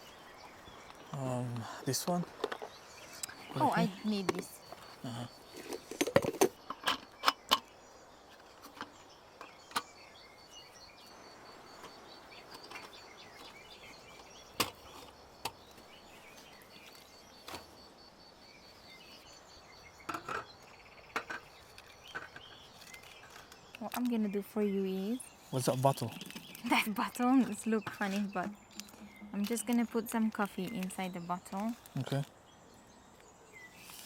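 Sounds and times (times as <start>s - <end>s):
quiet forest ambience: 0.0s - 34.0s
camp gear knocks and clicks: 2.2s - 7.7s, 8.3s - 10.0s, 11.8s - 17.8s, 20.1s - 24.2s, 25.8s - 30.9s.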